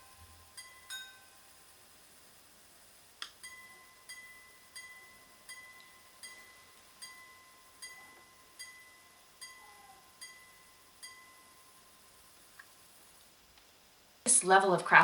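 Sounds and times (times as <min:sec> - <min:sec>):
pocket watch chiming: 0:00.6 - 0:01.3, 0:03.4 - 0:11.9.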